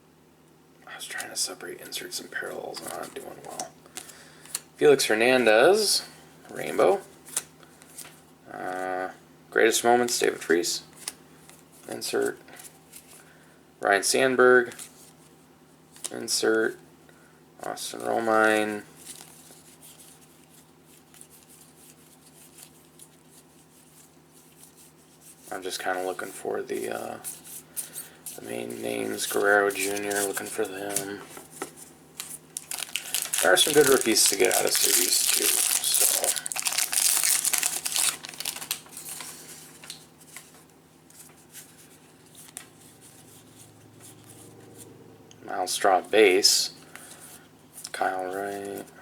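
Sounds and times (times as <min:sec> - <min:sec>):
low room hum: 0:00.0 - 0:49.0
cards rustling and sliding: 0:26.8 - 0:44.4.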